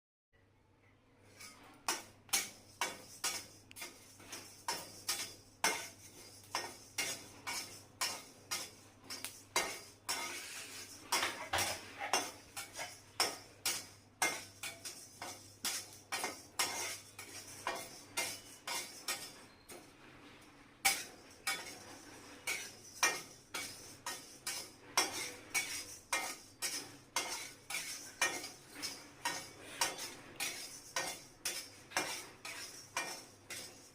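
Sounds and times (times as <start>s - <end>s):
faint sizzle: 0.9s - 33.9s
utensil stirring against a pan: 1.2s - 33.9s
food popping in a metal pan: 1.4s - 19.8s, 20.8s - 33.9s.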